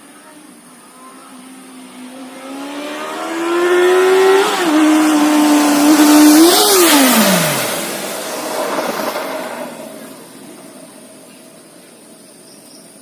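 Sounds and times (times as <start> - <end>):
motorcycle engine accelerating: 1.1 - 11.3.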